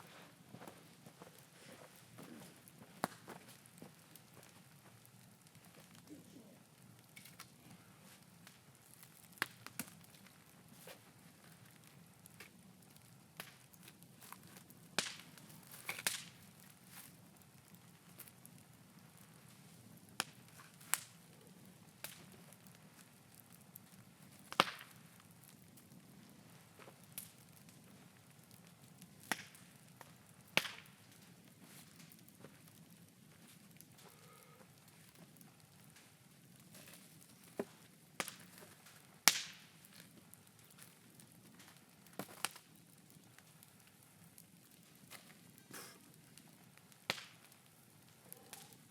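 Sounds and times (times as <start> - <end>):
bonfire crackling and popping: 0.0 - 48.9.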